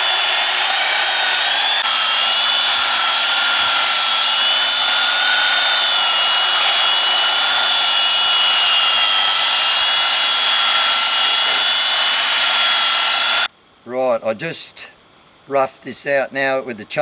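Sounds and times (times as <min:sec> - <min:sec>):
chainsaw cutting wood: 0:00.0 - 0:13.5
steady high whine: 0:00.0 - 0:13.5.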